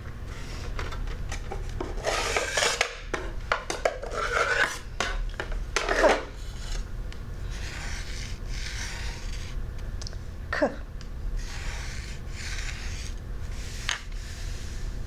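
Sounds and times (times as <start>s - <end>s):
fingertips rasping on sandpaper: 7.4s - 9.6s, 11.4s - 14.8s.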